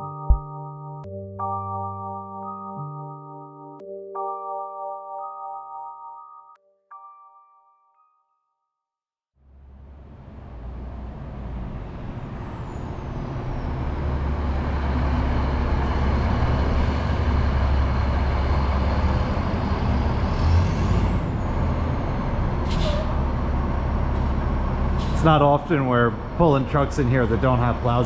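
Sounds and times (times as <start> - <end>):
heavy truck engine rumbling: 9.5 - 28.0.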